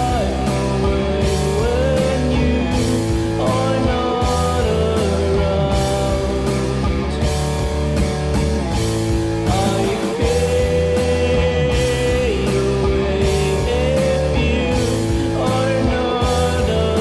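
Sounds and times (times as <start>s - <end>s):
grunge rock band playing: 0.0s - 17.0s.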